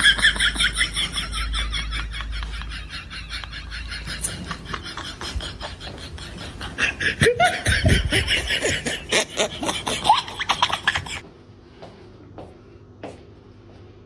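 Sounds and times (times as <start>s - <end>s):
rhythmic laughter: 0.0s - 11.2s.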